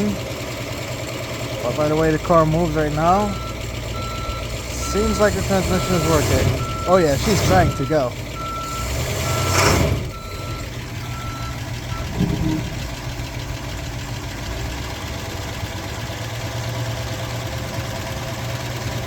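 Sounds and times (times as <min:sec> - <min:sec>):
car engine straining: 0:00.0 - 0:19.0
electronic beeping: 0:03.2 - 0:12.1.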